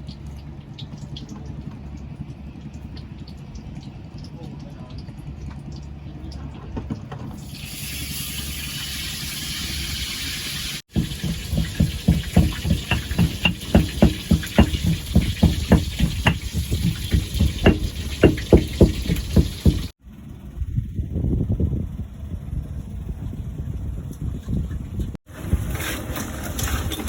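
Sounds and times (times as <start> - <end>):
water splashing: 10.9 - 20.0.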